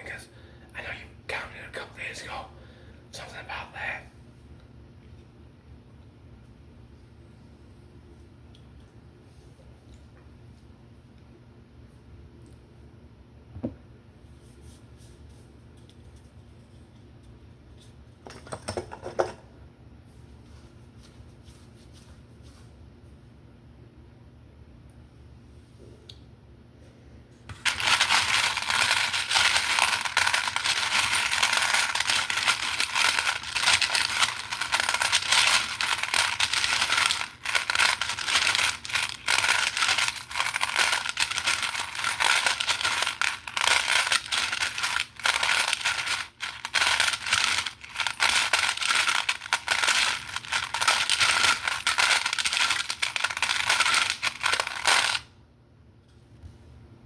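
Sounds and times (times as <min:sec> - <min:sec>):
small hard objects rattling: 0:27.5 - 0:55.2.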